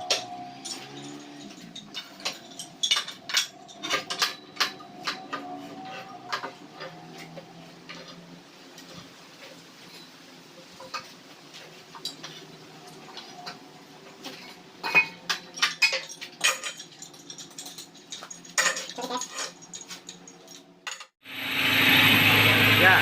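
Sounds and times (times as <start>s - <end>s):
metallic clinks: 0.0s - 7.3s, 14.3s - 21.1s
faint engine hum: 21.3s - 23.0s.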